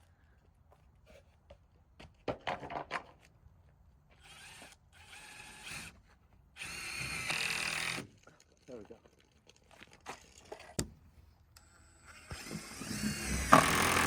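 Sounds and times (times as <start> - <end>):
power drill driving screws into wood: 4.2 - 6.0, 6.6 - 8.2, 12.0 - 14.0.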